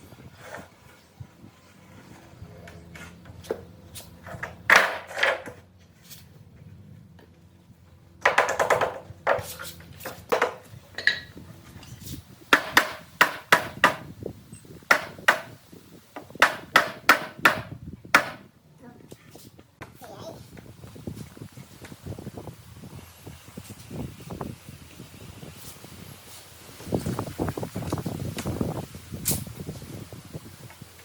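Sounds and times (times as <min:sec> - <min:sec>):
hammering on wood: 0:08.2 - 0:09.5, 0:10.3 - 0:10.6, 0:12.5 - 0:14.1, 0:14.9 - 0:15.6, 0:16.2 - 0:18.5.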